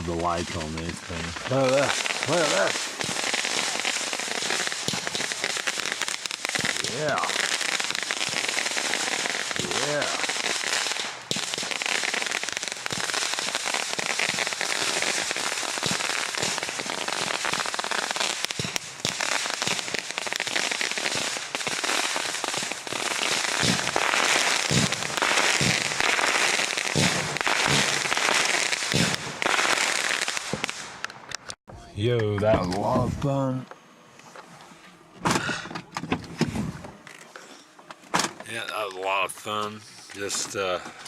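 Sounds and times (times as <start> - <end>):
deep firework bangs: 0.0 - 31.0
firecrackers crackling: 0.0 - 31.6, 38.4 - 40.8.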